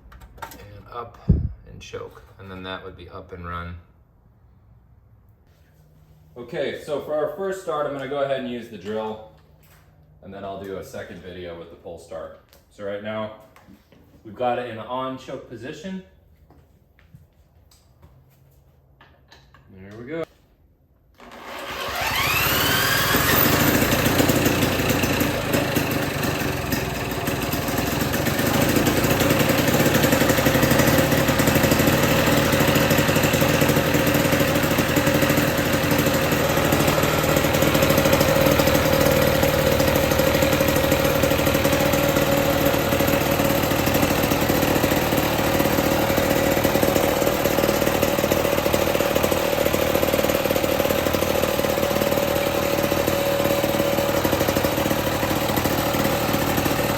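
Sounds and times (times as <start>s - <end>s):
two-stroke mower engine running: 21.2s - 56.9s.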